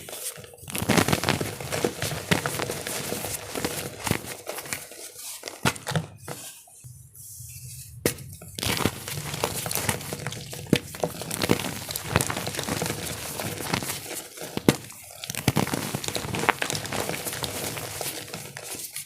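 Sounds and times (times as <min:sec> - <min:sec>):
chalk crunching and crackling: 0:00.0 - 0:05.5, 0:08.6 - 0:19.0.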